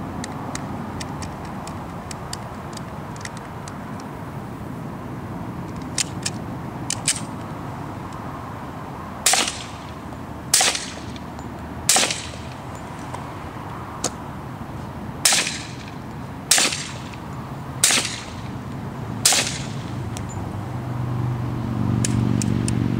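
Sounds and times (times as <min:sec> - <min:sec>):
faint clicks: 0:00.2 - 0:04.1
suppressed pistol shots: 0:09.2 - 0:11.2, 0:11.9 - 0:12.6, 0:15.2 - 0:17.2, 0:17.8 - 0:18.5, 0:19.2 - 0:19.9.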